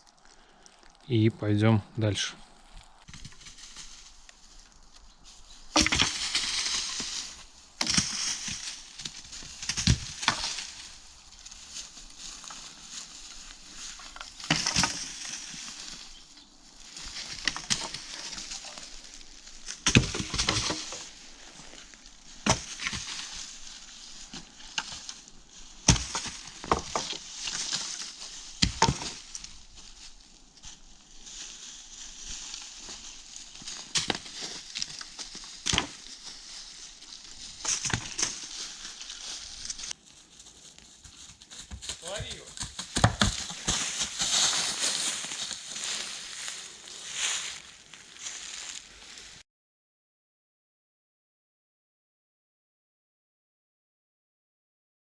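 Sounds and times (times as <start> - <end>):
crunching and rustling: 0.0 - 1.2, 2.0 - 49.4
sticks snapping: 5.7 - 10.9.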